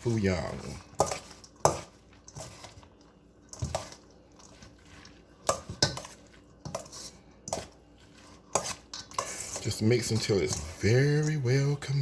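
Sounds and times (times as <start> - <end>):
utensil clinking and scraping a bowl: 0.0 - 12.0
utensil stirring batter in a bowl: 0.0 - 12.0.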